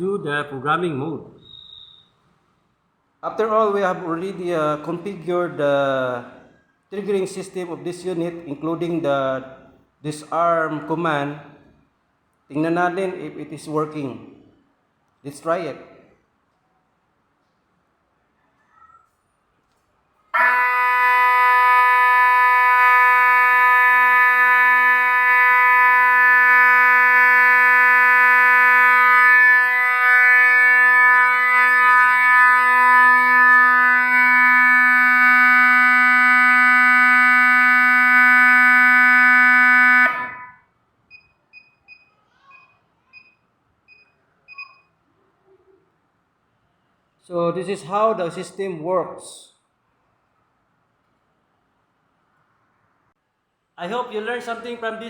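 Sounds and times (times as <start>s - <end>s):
short high beeps: 1.4s - 2.1s, 41.1s - 45.0s
steady alarm siren tone: 20.4s - 40.7s.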